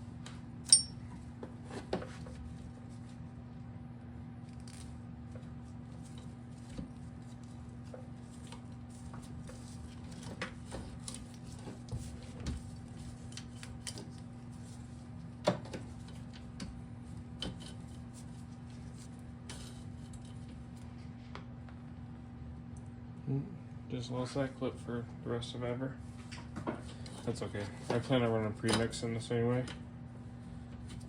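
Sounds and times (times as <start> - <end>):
steady low hum: 0.0 - 31.0
tools and metal parts rattling: 0.7 - 1.0.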